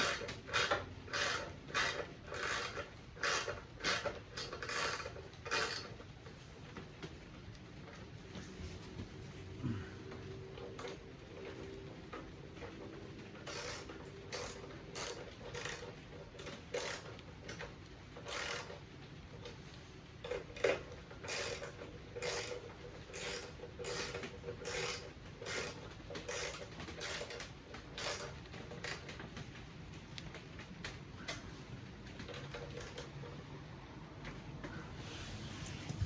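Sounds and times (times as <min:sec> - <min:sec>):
hand tool mechanical strokes: 0:00.0 - 0:06.0, 0:13.4 - 0:17.1, 0:20.6 - 0:29.1.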